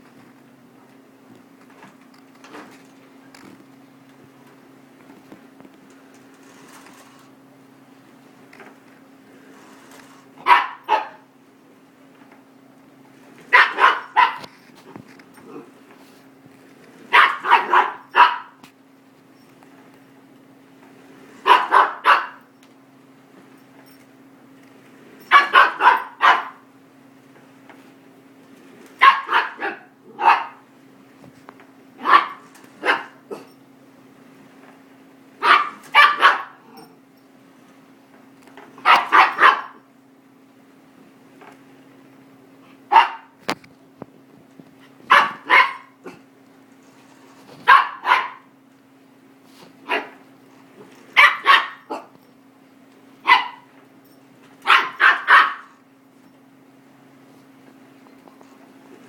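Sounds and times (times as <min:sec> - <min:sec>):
puppy barking: 0:10.4 - 0:11.3, 0:13.5 - 0:14.5, 0:17.1 - 0:18.6, 0:21.4 - 0:22.5, 0:25.2 - 0:26.6, 0:29.0 - 0:30.6, 0:32.0 - 0:33.5, 0:35.4 - 0:36.9, 0:38.8 - 0:39.9, 0:42.9 - 0:43.4, 0:45.1 - 0:46.2, 0:47.6 - 0:48.5, 0:49.8 - 0:50.2, 0:51.1 - 0:52.2, 0:53.2 - 0:53.7, 0:54.6 - 0:55.8.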